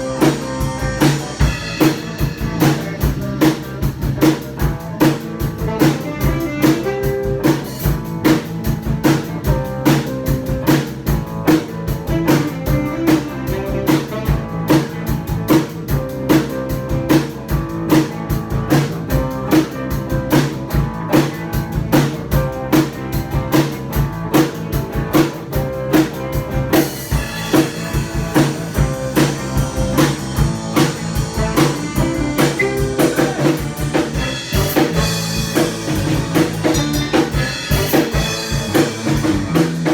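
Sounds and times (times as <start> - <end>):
band playing a song: 0.0 - 39.9
drum kit beat: 0.0 - 39.9
cymbals: 26.9 - 39.9.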